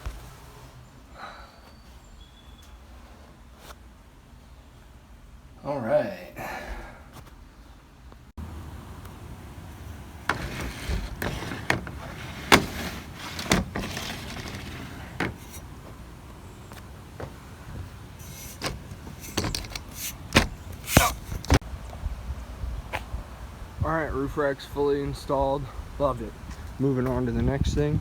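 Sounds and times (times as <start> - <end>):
knocks and clicks of tools: 10.3 - 15.7, 18.2 - 21.6.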